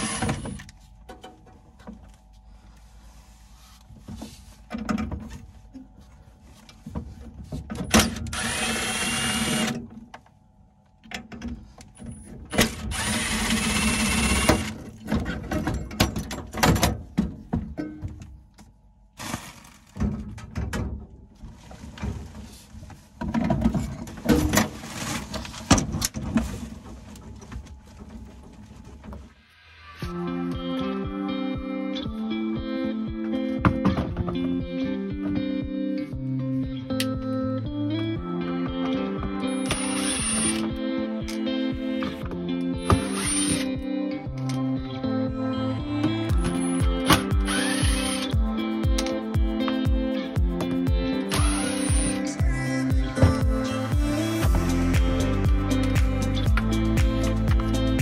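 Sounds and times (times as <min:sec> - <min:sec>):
cordless drill whining: 0:00.0 - 0:00.6, 0:08.3 - 0:09.8, 0:12.6 - 0:14.8, 0:39.6 - 0:40.7, 0:42.8 - 0:43.7, 0:46.5 - 0:48.3, 0:51.3 - 0:52.3.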